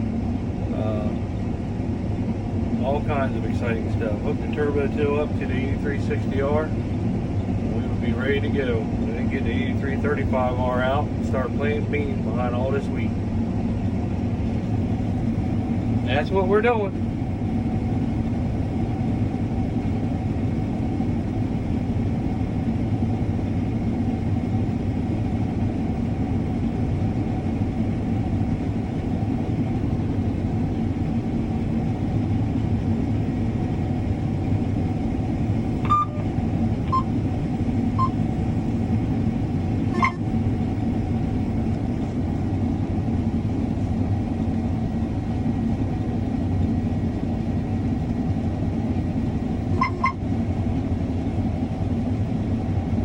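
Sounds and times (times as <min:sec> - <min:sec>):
combine harvester droning: 0:00.0 - 0:53.0
short clicks and beeps: 0:35.8 - 0:36.3, 0:36.9 - 0:37.1, 0:38.0 - 0:38.2, 0:39.9 - 0:40.2, 0:49.8 - 0:50.2.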